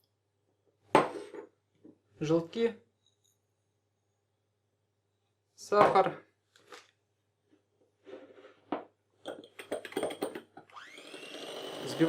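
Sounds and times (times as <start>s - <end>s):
electric hand mixer whine: 10.7s - 12.0s.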